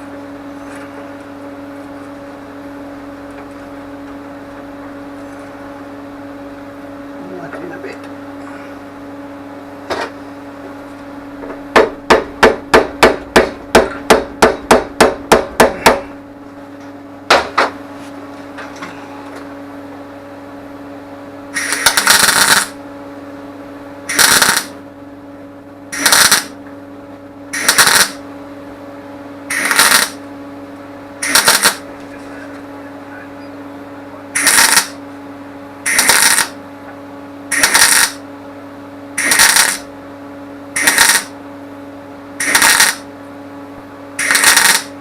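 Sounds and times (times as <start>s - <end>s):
steady low hum: 0.0s - 45.0s
bursts of harsh noise: 21.6s - 22.8s, 24.1s - 24.7s, 26.0s - 26.5s, 27.6s - 28.2s, 29.5s - 30.2s, 31.2s - 31.8s, 34.4s - 35.0s, 35.9s - 36.6s, 37.5s - 38.2s, 39.2s - 39.9s, 40.8s - 41.3s, 42.4s - 43.0s, 44.2s - 44.9s.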